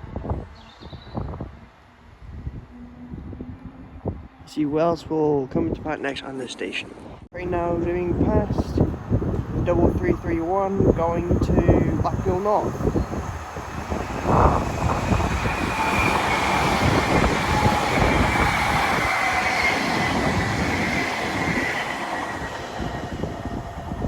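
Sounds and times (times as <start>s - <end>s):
high train whine falling in pitch: 1.2s - 4.5s, 10.3s - 24.0s
train passing at speed: 1.2s - 5.0s, 5.7s - 24.0s.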